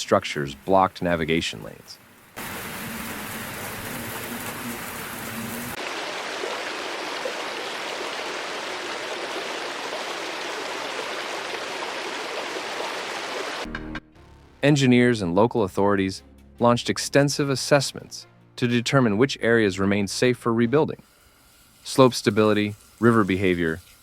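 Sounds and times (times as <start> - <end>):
hiss of rushing water: 0.0 - 13.6, 21.0 - 24.0.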